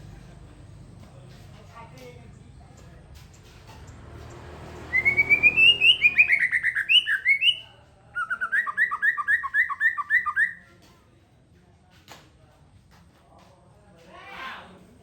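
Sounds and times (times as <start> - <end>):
songbird whistling song: 4.8 - 10.7.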